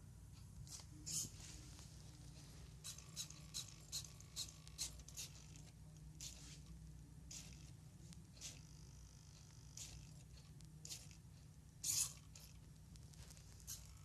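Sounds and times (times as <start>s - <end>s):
low steady hum: 0.0s - 14.0s
small robot motors moving: 2.8s - 5.6s, 7.3s - 7.7s, 8.4s - 8.9s, 9.6s - 10.2s, 11.8s - 12.6s.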